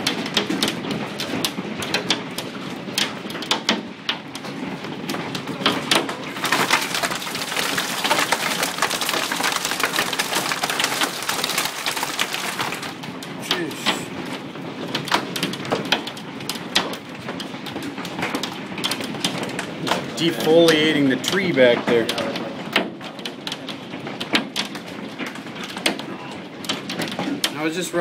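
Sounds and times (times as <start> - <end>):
hailstones clattering: 4.4 - 28.0
hiss of falling hail and rain: 6.0 - 14.4.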